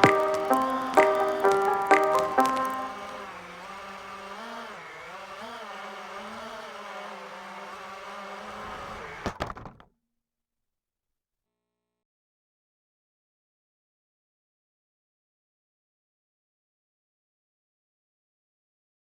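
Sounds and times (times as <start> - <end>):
sharp clicks: 0.0 - 3.3
drone motors humming: 0.0 - 9.3.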